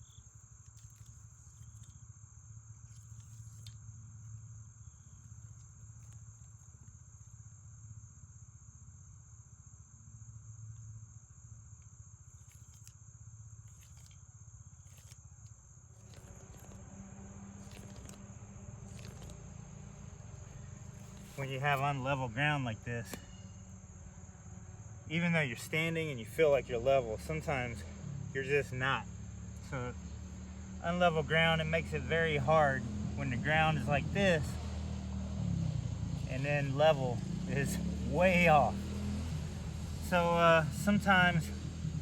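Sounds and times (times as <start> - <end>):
faint low hum: 0.0 - 42.0
insects chirring: 0.0 - 42.0
handling rustling noise: 20.7 - 21.9.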